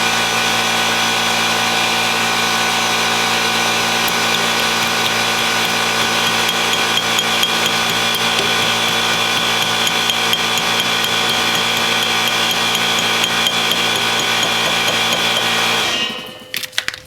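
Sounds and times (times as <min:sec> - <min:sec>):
impact wrench hammering: 0:04.0 - 0:17.0.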